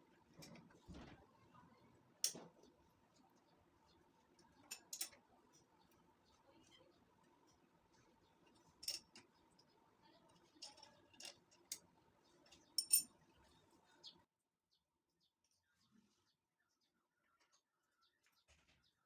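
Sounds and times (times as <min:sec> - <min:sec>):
light clinks and clicks: 0:04.4 - 0:05.7, 0:08.4 - 0:13.2.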